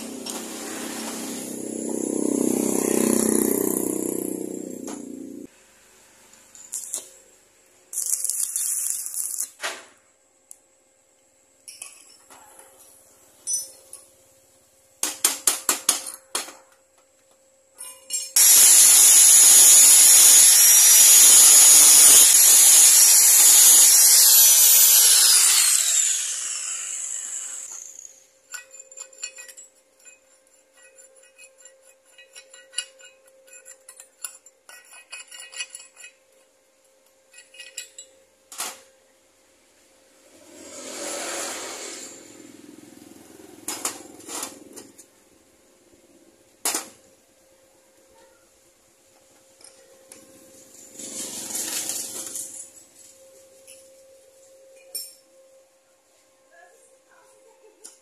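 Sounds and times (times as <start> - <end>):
small metal clinks: 13.4 - 14.1, 16.0 - 18.4
power tool whining: 18.4 - 28.3.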